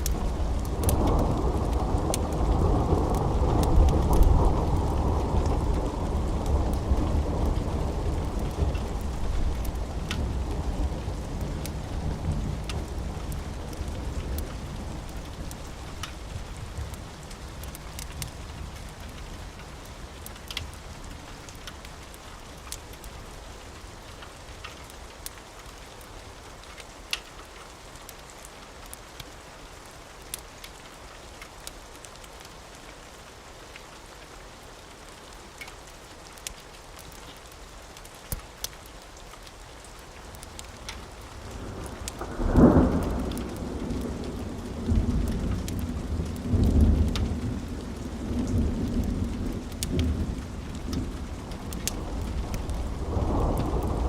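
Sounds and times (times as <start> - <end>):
steady rain: 0.0 - 54.0
wood fire crackling: 0.0 - 54.0
thunder rolling: 41.6 - 54.0.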